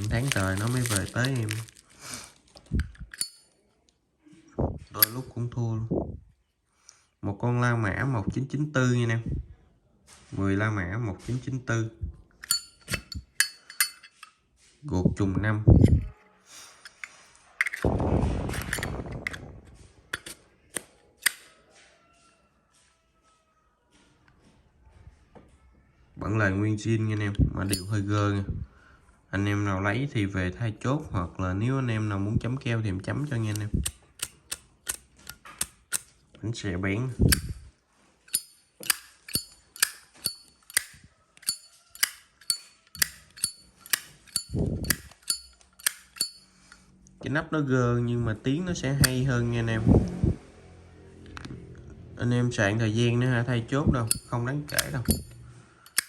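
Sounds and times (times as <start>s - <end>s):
flint wheel rasping: 0.0s - 2.1s, 2.8s - 3.4s, 5.0s - 5.3s, 12.4s - 14.3s, 20.2s - 20.4s, 27.7s - 28.0s, 37.3s - 37.7s, 38.3s - 46.9s, 54.0s - 56.0s
lighter lid clicks: 37.3s - 37.6s, 38.3s - 46.4s, 54.1s - 56.0s.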